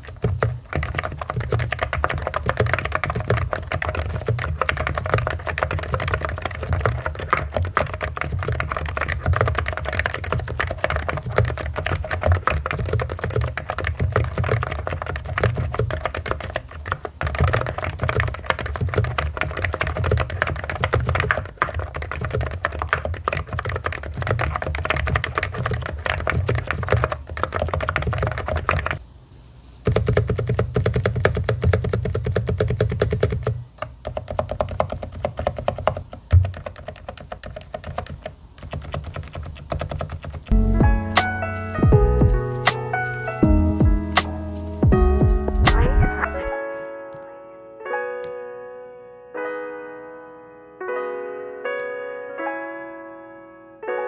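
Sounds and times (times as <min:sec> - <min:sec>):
fast keyboard typing: 0:00.0 - 0:29.0, 0:29.8 - 0:40.6.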